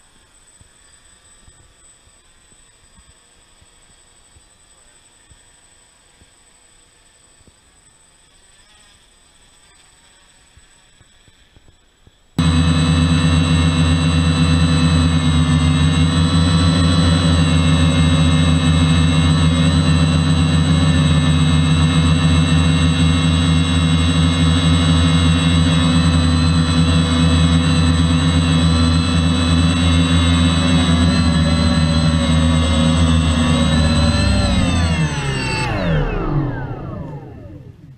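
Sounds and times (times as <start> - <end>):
drone motors whining: 12.4 - 37.9.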